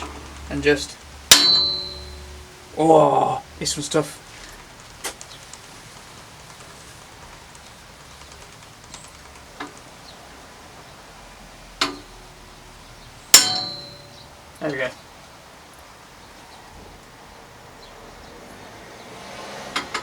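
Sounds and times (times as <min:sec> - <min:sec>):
hammer blows on steel punch: 0:01.3 - 0:02.8, 0:13.3 - 0:14.4.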